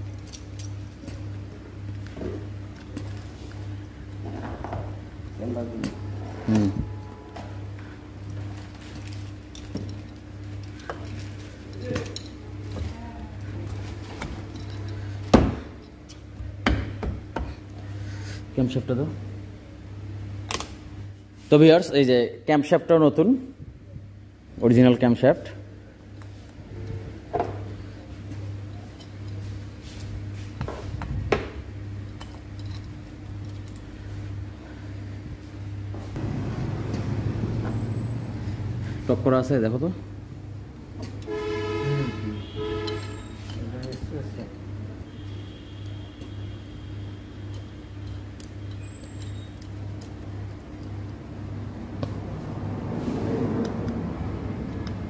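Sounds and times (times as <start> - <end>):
pulsing mechanical hum: 0.0 - 21.4, 25.6 - 55.0
low hum: 2.8 - 13.7.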